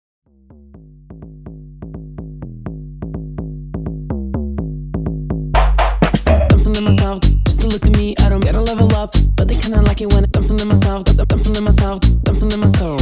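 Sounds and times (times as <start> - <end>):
drum machine beat: 4.9 - 13.0.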